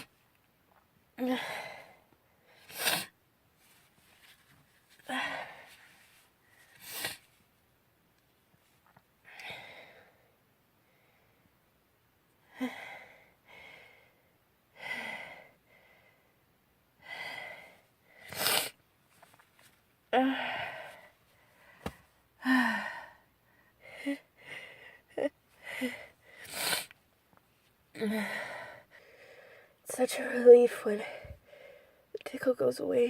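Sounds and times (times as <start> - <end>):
girl gasping breaths: 1.2 - 3.0, 5.1 - 5.8, 9.3 - 10.2, 12.5 - 14.2, 17.0 - 18.6, 20.2 - 26.9, 28.0 - 29.8, 30.5 - 32.1
girl sneezing: 2.7 - 3.1.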